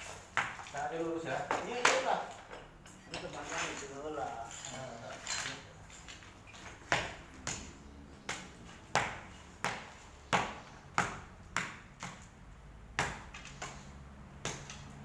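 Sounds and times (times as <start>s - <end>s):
hammer striking tile: 6.9s - 7.7s, 8.3s - 12.3s.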